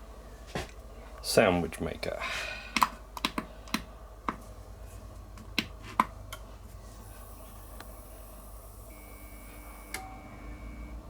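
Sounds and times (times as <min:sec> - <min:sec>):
high-pitched electronic whine: 0:07.0 - 0:11.0.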